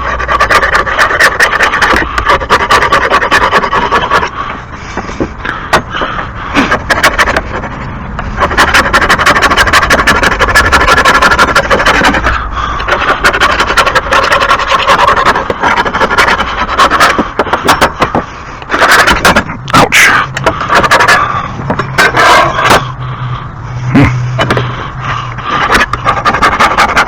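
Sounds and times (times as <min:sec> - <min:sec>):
scraping grass off lawn mower: 0:06.5 - 0:22.9.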